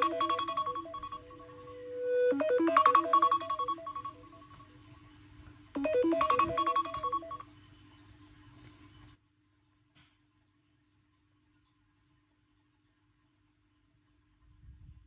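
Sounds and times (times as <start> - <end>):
smartphone ringtone melody: 0.0 - 4.6, 5.8 - 7.4.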